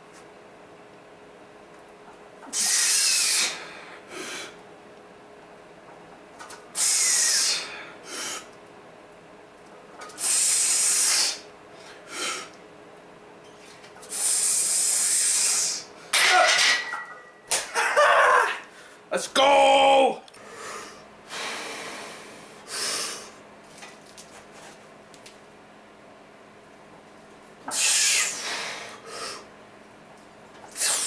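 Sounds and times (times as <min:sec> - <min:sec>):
person breathing hard: 0:27.8 - 0:29.5.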